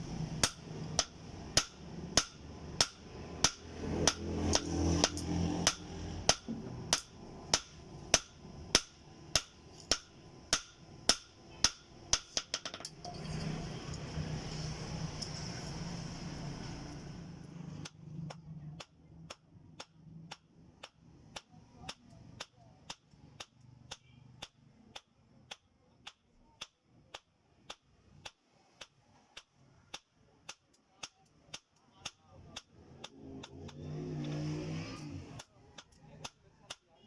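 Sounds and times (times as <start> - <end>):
hammer striking steel on anvil: 0.4 - 13.6.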